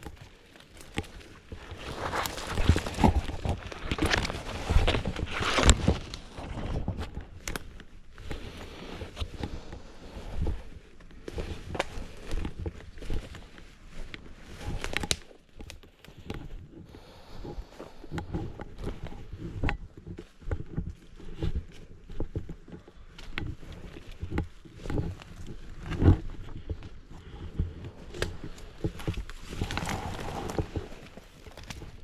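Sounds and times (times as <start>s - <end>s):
footsteps crunching through leaves: 0.3s - 6.4s.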